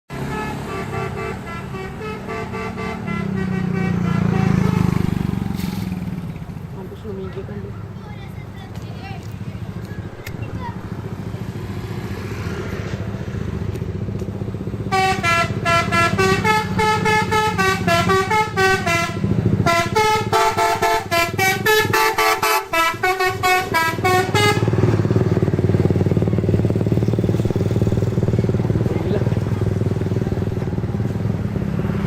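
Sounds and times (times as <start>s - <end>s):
musical air horns playing tune: 0.1s - 5.3s, 14.9s - 24.9s
bus engine running: 0.1s - 32.0s.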